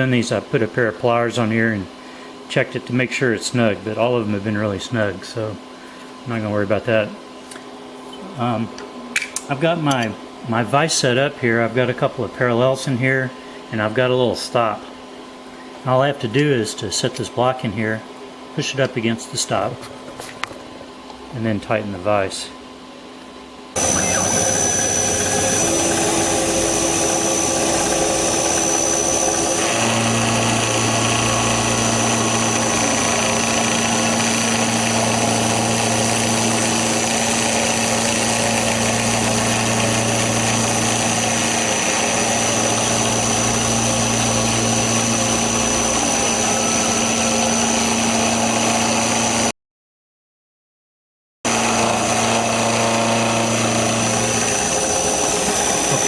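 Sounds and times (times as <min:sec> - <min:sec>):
milling machine whine: 0:23.8 - 0:49.5, 0:51.5 - 0:56.0.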